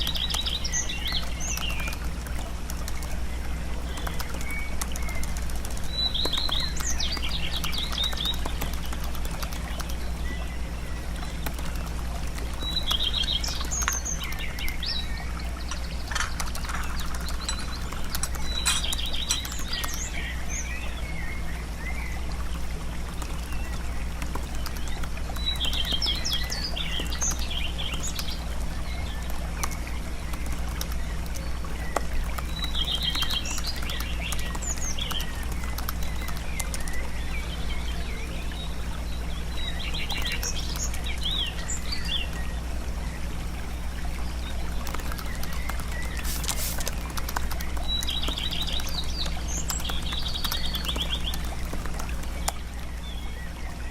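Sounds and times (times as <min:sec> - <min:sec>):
low hum: 0:00.0 - 0:53.9
songbirds chirping and trilling: 0:00.0 - 0:53.9
faint hiss: 0:46.2 - 0:47.0.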